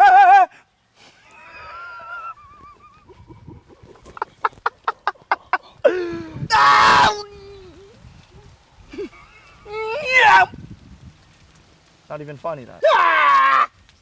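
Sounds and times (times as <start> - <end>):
person squealing: 5.8 - 8.0, 9.6 - 10.5.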